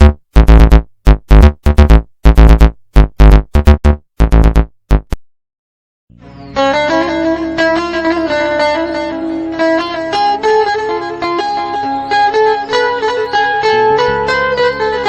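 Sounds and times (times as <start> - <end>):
loud synthesizer chords: 0.0 - 5.2.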